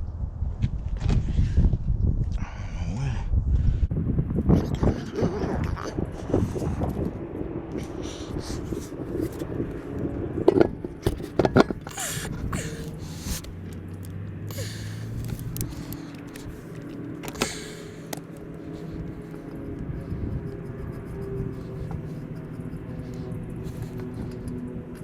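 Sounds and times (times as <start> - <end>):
low steady hum: 3.0 - 25.0
air hissing at tyre valve: 11.9 - 13.5, 14.5 - 15.3.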